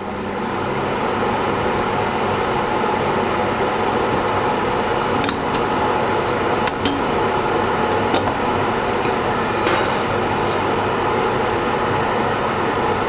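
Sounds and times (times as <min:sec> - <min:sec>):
cutlery clinking against a dish: 0:04.4 - 0:10.8.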